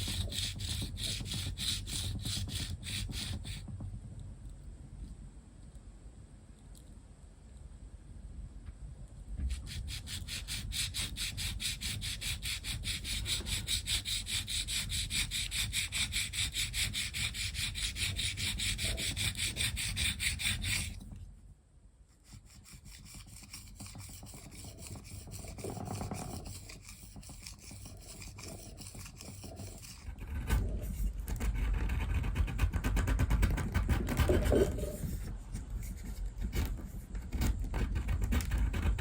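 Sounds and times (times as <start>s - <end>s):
knife scraping on whetstone: 0.0s - 3.6s, 9.5s - 21.0s, 22.3s - 30.8s.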